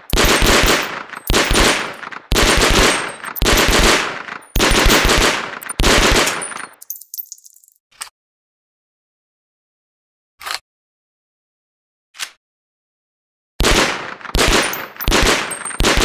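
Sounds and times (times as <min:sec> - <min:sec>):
submachine gun automatic bursts: 0:00.1 - 0:06.6, 0:13.6 - 0:16.0.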